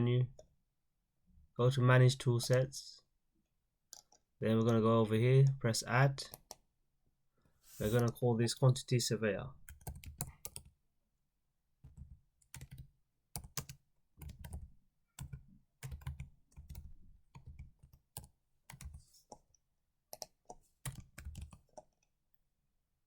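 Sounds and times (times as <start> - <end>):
computer keyboard typing: 9.7 - 10.7, 11.9 - 19.4, 20.1 - 22.0.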